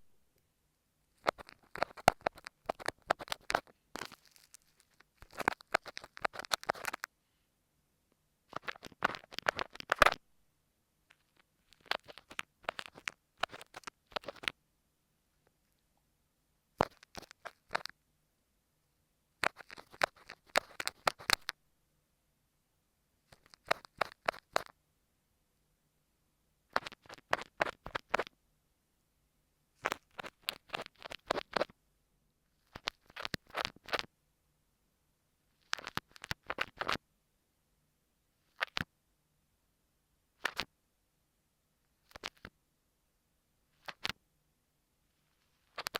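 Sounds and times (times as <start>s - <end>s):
sand slime squishing and crackling: 1.2s - 7.0s.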